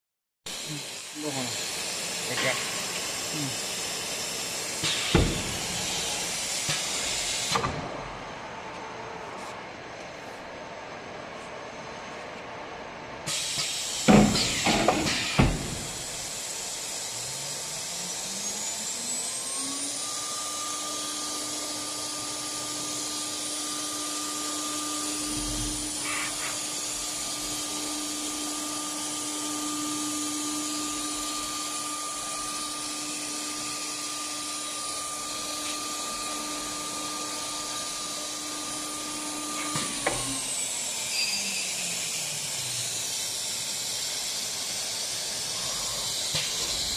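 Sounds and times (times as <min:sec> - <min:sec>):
router spindle whining: 0:15.8 - 0:46.9.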